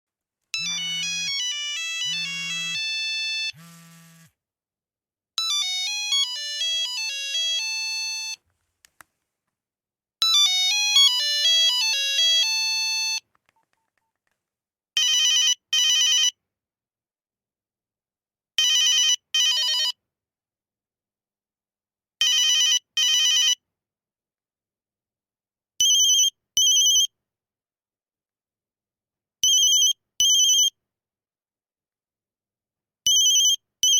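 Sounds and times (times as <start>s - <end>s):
monophonic phone ringtone: 0.6s - 3.8s, 5.4s - 8.4s, 10.2s - 13.2s, 15.0s - 16.4s, 18.6s - 20.0s, 22.2s - 23.6s, 25.8s - 27.1s, 29.4s - 30.7s, 33.1s - 33.9s.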